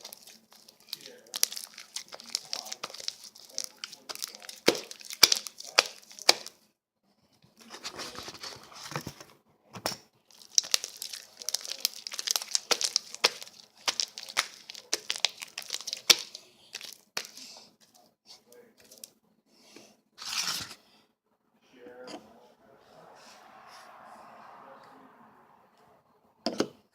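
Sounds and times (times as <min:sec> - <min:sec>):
slime squished wet crackling: 0:00.0 - 0:06.6, 0:10.3 - 0:17.5.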